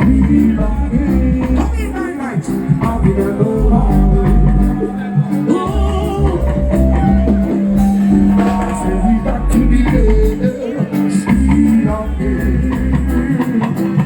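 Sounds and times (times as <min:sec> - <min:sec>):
loud music with singing: 0:00.0 - 0:14.0
deep pulsing bass line: 0:02.8 - 0:10.7.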